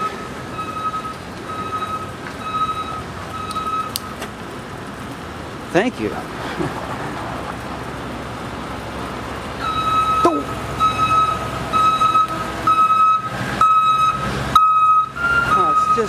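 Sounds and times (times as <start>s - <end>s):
truck backup alarm beeping: 0.0s - 4.2s, 9.6s - 16.0s
vehicle hum: 0.0s - 16.0s.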